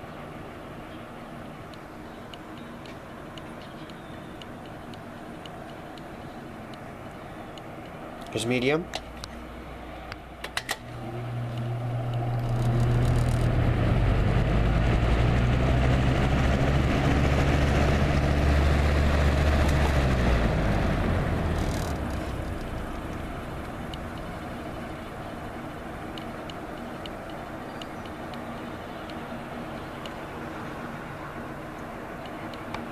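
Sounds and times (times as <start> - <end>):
fan motor hum and blade whoosh: 0.0 - 32.9
fan switch click: 10.1 - 13.7.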